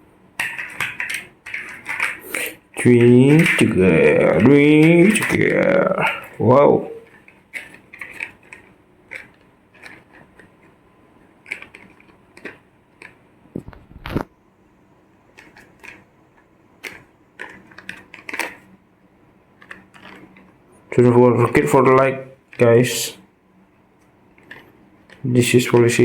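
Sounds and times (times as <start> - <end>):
plastic toy vehicles clicking: 0.4 - 10.8, 11.4 - 13.2, 15.3 - 16.1, 16.8 - 18.8, 19.6 - 23.1, 24.4 - 26.0.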